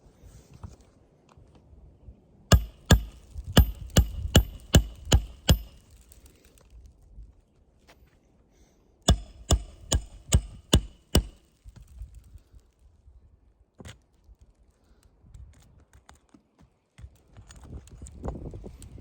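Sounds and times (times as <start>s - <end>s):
hammer striking metal tool: 2.5s - 5.9s, 9.1s - 11.4s
shingle cracking: 2.5s - 6.6s, 9.1s - 12.4s.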